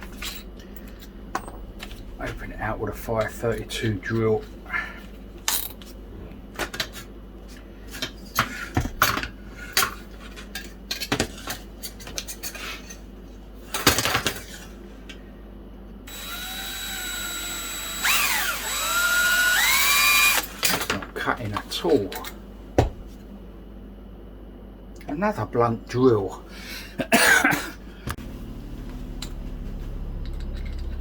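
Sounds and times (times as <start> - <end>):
electric drill whining: 16.1 - 20.5
metal parts clicking and knocking: 30.2 - 31.0.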